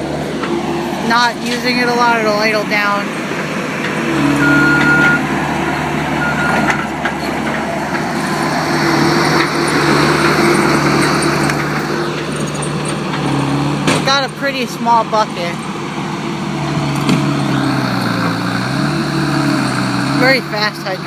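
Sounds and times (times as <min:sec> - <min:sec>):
diesel engine working: 0:00.0 - 0:21.0
short high beeps: 0:04.2 - 0:05.2.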